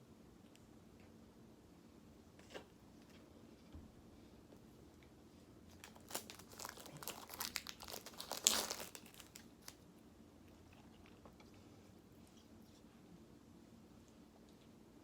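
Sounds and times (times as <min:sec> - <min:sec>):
plastic bottle crinkling: 0:05.7 - 0:09.8.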